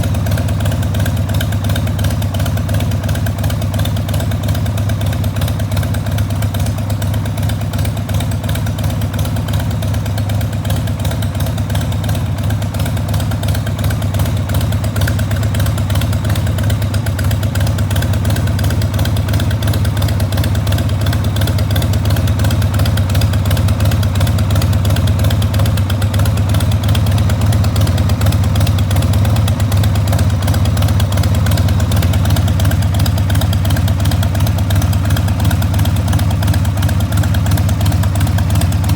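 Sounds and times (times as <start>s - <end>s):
motorcycle engine idling: 0.0s - 38.9s.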